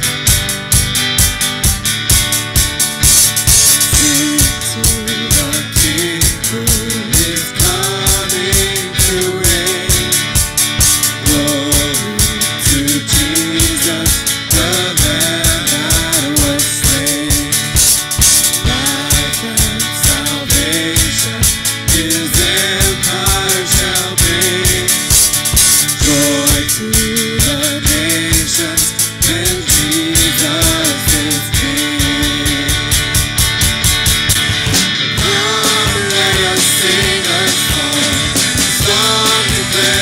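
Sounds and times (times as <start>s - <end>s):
band playing instrumental: 0.0s - 40.0s
drum kit steady beat: 0.0s - 40.0s
melodic lead line: 29.3s - 40.0s.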